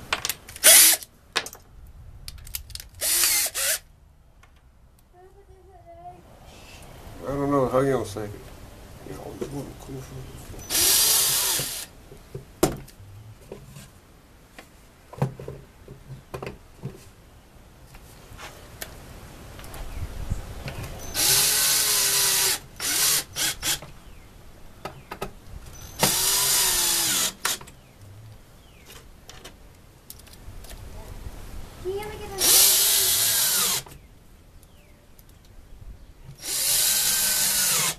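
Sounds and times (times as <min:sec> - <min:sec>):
power drill running: 0:03.0 - 0:03.8, 0:10.7 - 0:11.9, 0:21.2 - 0:23.8, 0:26.0 - 0:27.6, 0:32.4 - 0:33.8, 0:36.4 - 0:37.9.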